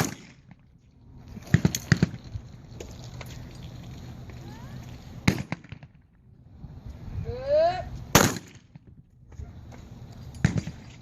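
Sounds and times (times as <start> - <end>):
shotgun shots: 0.0 - 0.5, 5.2 - 5.9, 8.1 - 8.7
person calling for target: 7.2 - 8.0.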